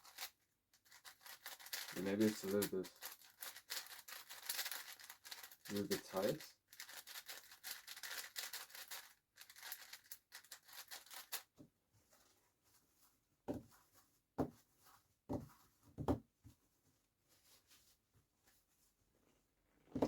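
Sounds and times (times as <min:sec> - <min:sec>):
crackly rustling clicks: 0:00.0 - 0:11.5.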